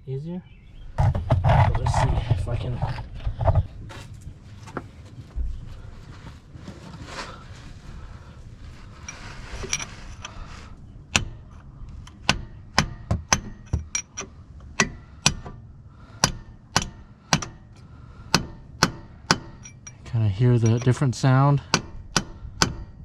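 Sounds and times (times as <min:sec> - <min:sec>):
handling and scraping noise: 0:01.0 - 0:10.8, 0:19.6 - 0:21.4
hammer striking metal punch: 0:16.2 - 0:17.6, 0:18.3 - 0:19.8.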